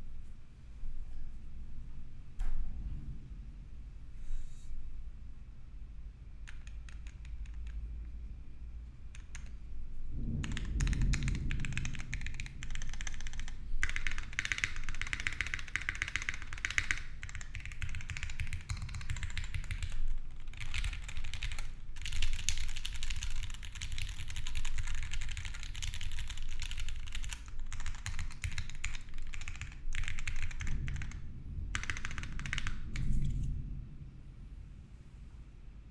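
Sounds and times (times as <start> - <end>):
low thunder rumble: 0.0 - 19.2, 20.0 - 35.9
mechanical keyboard clacks: 6.4 - 7.8, 9.1 - 33.3.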